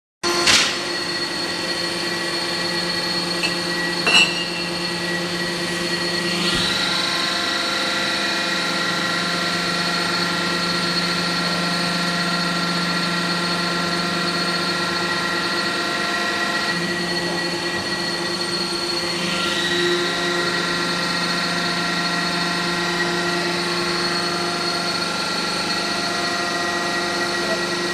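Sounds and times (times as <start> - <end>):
forming machine humming: 0.9 - 6.2.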